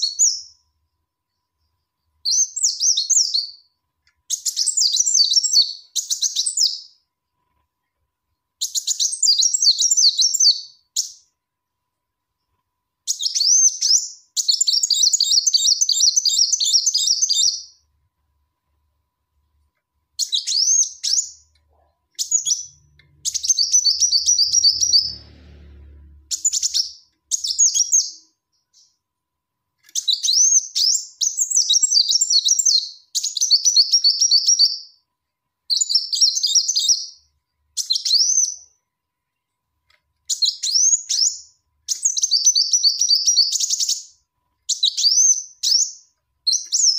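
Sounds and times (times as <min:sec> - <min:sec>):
sunbird twittering: 0:22.2 - 0:25.2.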